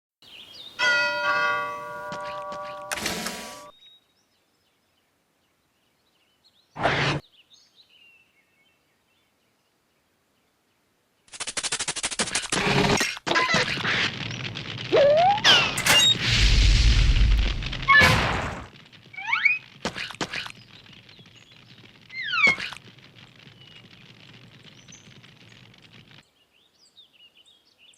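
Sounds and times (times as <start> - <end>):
rattle of clicks: 13.3 - 26.2
low rumble: 14.1 - 19.8.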